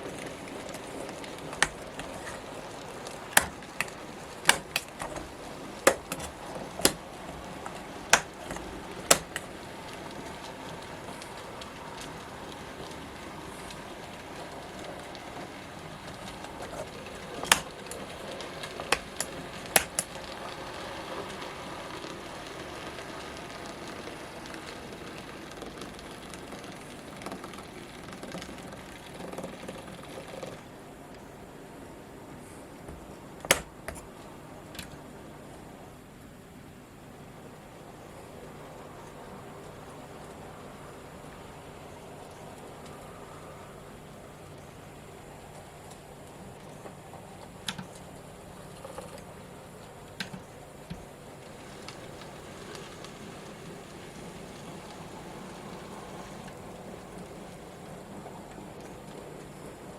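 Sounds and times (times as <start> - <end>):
sharp metallic clicks: 18.9 - 20.2.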